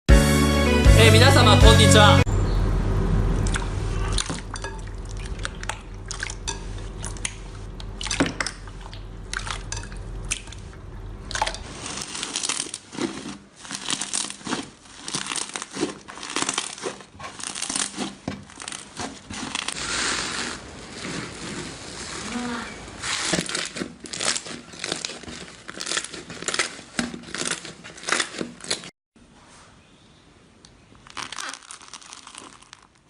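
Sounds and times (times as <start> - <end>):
low steady hum: 1.3 - 25.8
slime squeezed by hand: 31.1 - 33.0.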